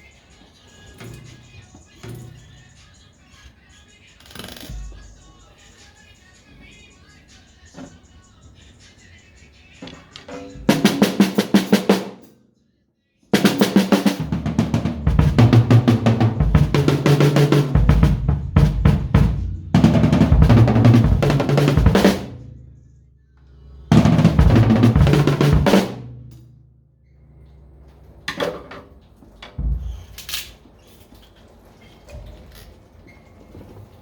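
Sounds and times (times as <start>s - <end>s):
rapid drum rolls: 10.2s - 12.1s, 13.4s - 22.4s, 23.9s - 26.4s, 29.6s - 30.2s.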